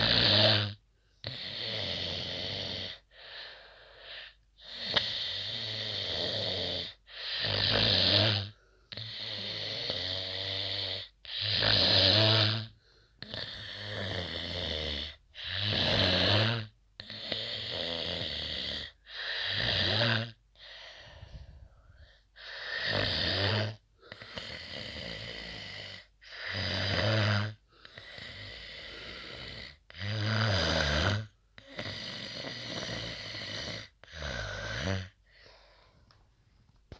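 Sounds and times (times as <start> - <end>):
person snoring heavily: 0.0 - 35.7
quiet breath: 2.8 - 5.6, 8.5 - 9.5, 12.7 - 15.6, 20.5 - 23.0, 27.5 - 30.0, 31.3 - 36.8.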